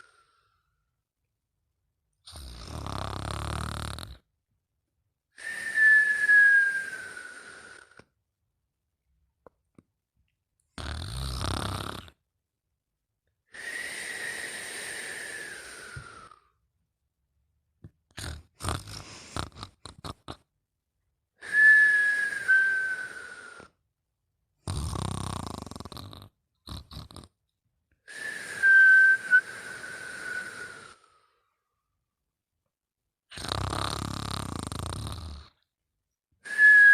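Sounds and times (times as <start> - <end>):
rough rattling snores: 2.2 - 4.3, 10.7 - 12.2, 18.1 - 20.5, 24.6 - 27.4, 33.3 - 35.7
whistling breaths: 5.4 - 8.1, 13.5 - 16.6, 21.4 - 23.8, 28.0 - 31.6, 36.4 - 36.9
sputtering snorts: 10.8 - 12.2, 18.1 - 20.5, 24.7 - 27.4, 33.3 - 35.6.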